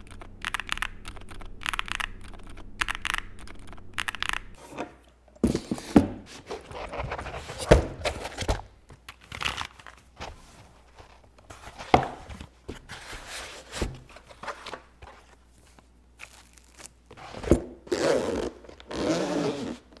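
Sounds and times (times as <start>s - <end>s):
scraping and rustling: 4.6s - 8.7s, 9.9s - 15.9s.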